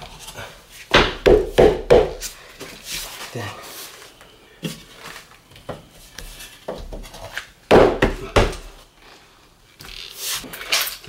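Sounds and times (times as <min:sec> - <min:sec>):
flooring boards knocking: 0:00.9 - 0:02.2, 0:07.7 - 0:08.8.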